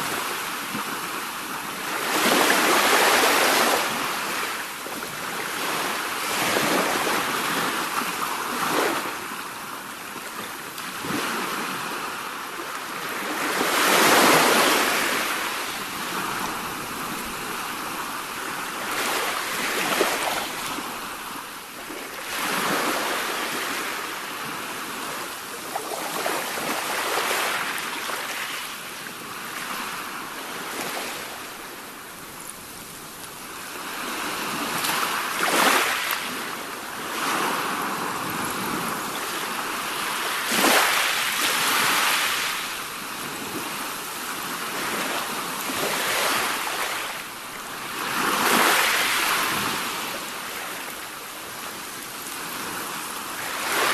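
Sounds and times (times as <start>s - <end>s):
sea waves breaking on shore: 0.0s - 53.9s.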